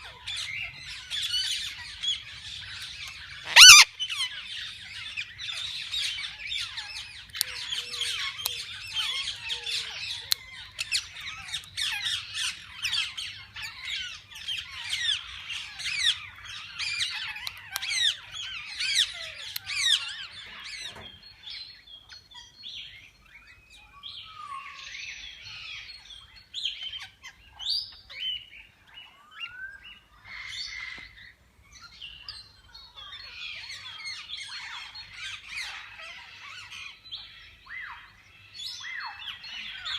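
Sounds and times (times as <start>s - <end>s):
parakeets chattering and chirping: 0.0s - 21.0s, 32.9s - 39.9s.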